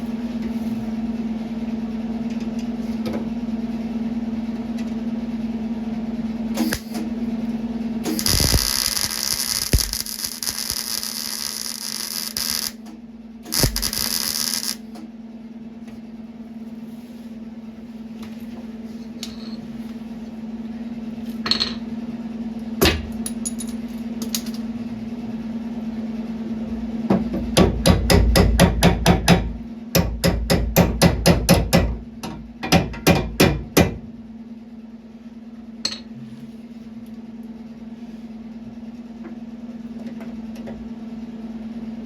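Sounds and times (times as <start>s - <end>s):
steady low hum: 0.0s - 30.8s.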